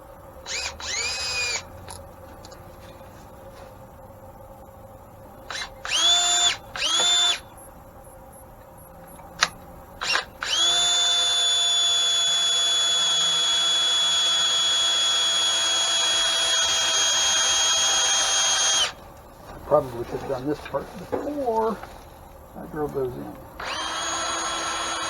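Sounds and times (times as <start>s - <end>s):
electric drill whining: 0.5s - 2.0s, 5.5s - 7.5s, 10.0s - 19.0s, 23.6s - 25.0s.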